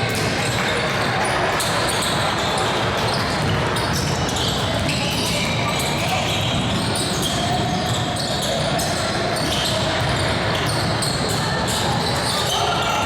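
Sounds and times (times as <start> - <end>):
basketball bouncing on court: 2.5 - 8.0, 9.8 - 11.1.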